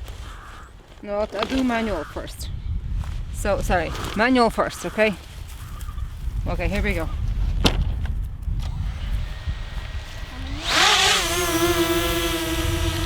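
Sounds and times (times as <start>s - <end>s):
quadcopter motors whining: 8.5s - 13.0s.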